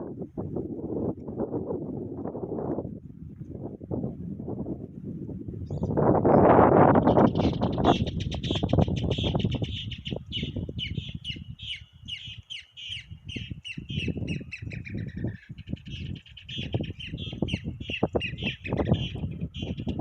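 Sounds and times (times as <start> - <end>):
songbird chirping: 7.0 - 20.0.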